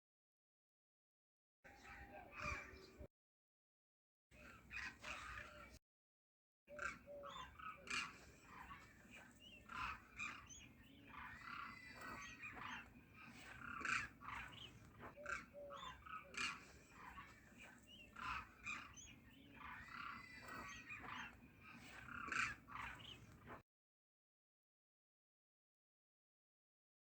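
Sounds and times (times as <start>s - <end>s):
flock of cranes calling: 1.7s - 3.1s, 4.4s - 5.8s, 6.7s - 23.6s.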